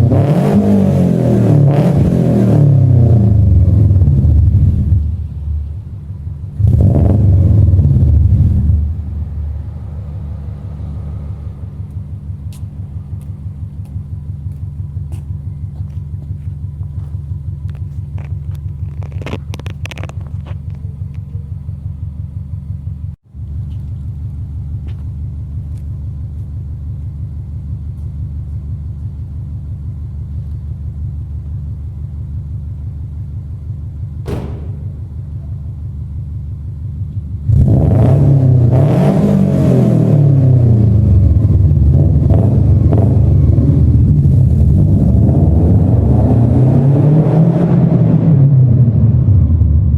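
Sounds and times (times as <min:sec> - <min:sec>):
car engine idling and revving: 0:00.0 - 0:49.9.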